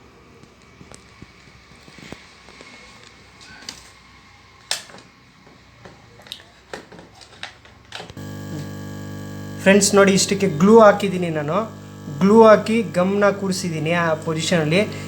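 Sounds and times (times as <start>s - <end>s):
electrical hum: 8.2s - 15.0s.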